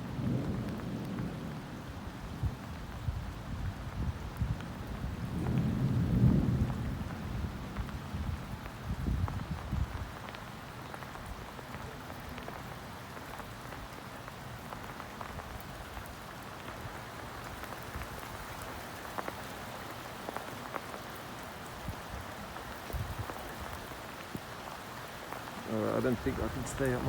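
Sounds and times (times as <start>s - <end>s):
low thunder rumble: 0.0s - 10.2s, 25.8s - 27.0s
heavy rain falling: 0.0s - 27.0s.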